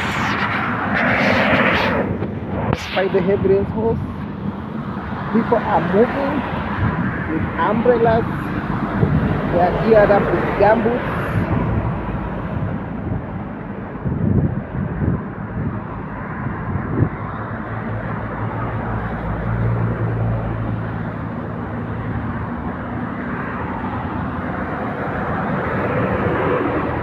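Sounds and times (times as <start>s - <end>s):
low bumps: 0.0s - 6.2s
truck engine drone: 0.0s - 16.1s.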